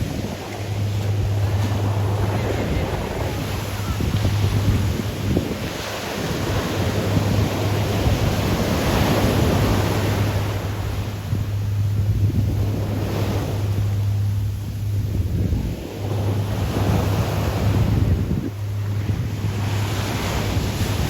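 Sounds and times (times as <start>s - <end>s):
surf breaking on beach: 0.0s - 14.2s
wind buffeting microphone: 0.0s - 21.0s.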